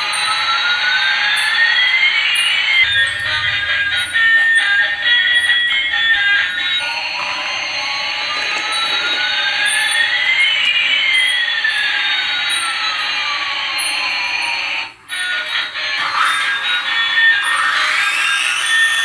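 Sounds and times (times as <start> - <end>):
electronic jet engine effect: 2.8 - 6.6.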